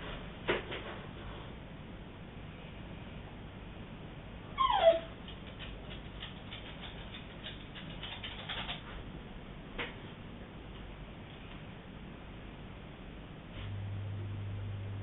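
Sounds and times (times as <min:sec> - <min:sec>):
dog whining: 0:04.6 - 0:05.2.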